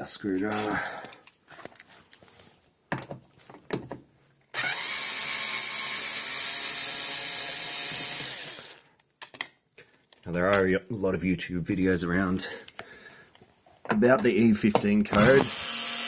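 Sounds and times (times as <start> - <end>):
power screwdriver running: 4.6 - 8.9, 15.2 - 16.0.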